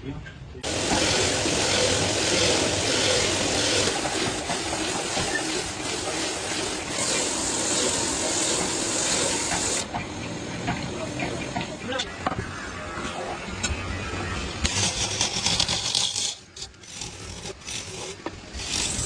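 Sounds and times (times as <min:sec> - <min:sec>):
loud steady hissing rush: 0:00.6 - 0:12.0.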